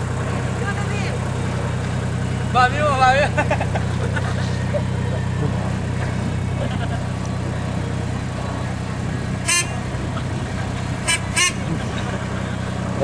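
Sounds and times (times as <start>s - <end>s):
bulldozer diesel engine running: 0.0s - 13.0s
high-pitched toots: 9.5s - 9.8s, 11.0s - 11.7s.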